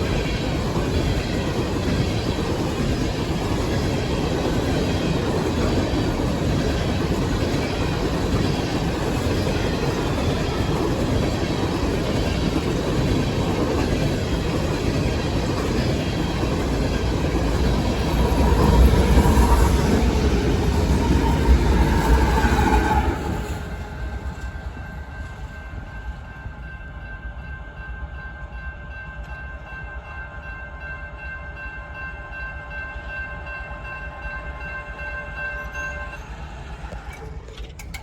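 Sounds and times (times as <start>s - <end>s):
train cars rumbling past: 0.0s - 38.0s.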